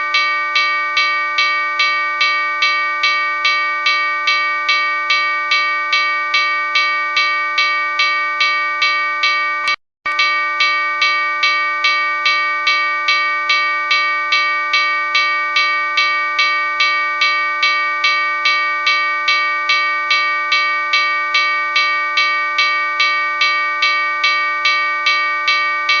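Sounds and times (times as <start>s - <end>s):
locomotive bell ringing: 0.0s - 26.0s.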